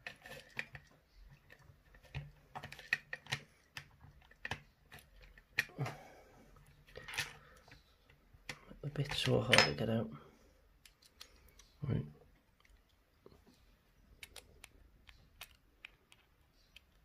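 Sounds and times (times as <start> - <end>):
screwdriver bits clicking and tapping: 0.0 - 5.7, 10.8 - 11.8, 14.1 - 17.0.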